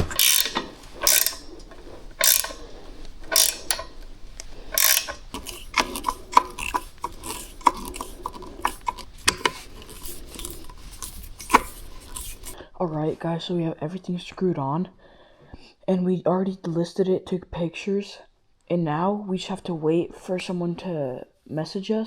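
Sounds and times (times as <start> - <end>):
ratchet clicking: 0.0 - 12.6.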